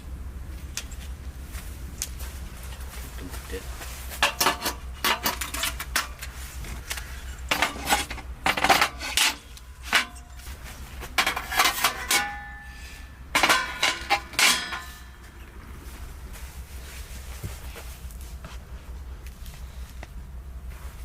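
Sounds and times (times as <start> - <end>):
metal objects clattering and clinking: 4.2 - 15.5.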